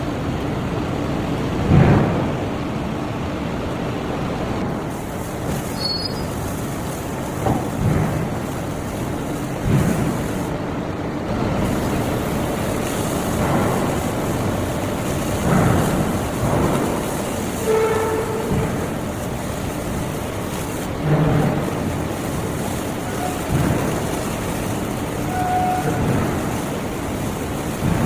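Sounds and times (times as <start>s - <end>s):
heavy forging machinery running: 0.0s - 28.0s
machinery squealing tones: 5.6s - 6.6s, 25.1s - 26.5s.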